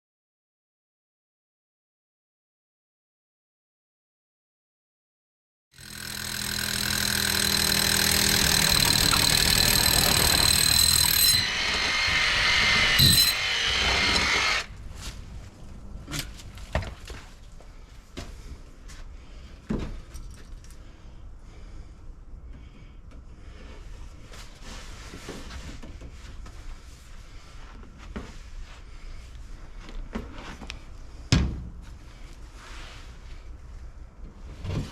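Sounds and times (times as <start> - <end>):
power tool motor whining: 5.8 - 14.7.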